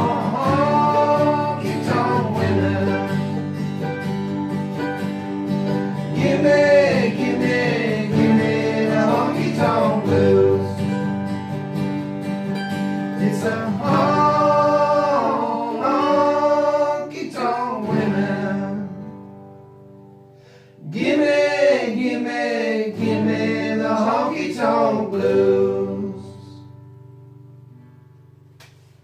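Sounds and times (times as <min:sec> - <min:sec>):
person singing: 0:00.0 - 0:03.6, 0:06.1 - 0:11.0, 0:13.2 - 0:19.2, 0:20.8 - 0:26.6
strummed acoustic guitar: 0:00.0 - 0:29.0.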